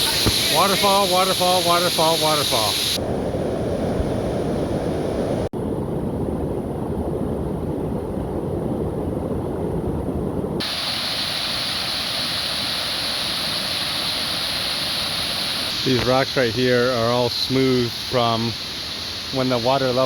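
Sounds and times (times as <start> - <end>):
waterfall rushing: 0.0 - 3.0, 10.6 - 20.0.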